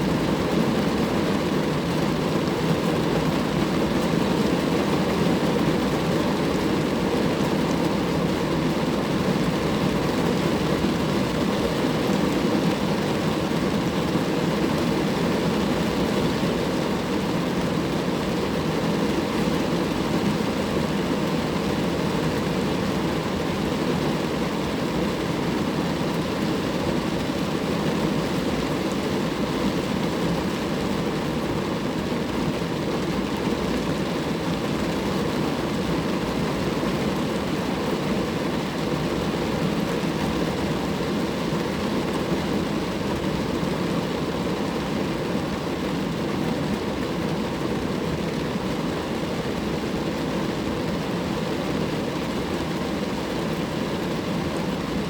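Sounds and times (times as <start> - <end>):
rain falling on a car: 0.0 - 55.0.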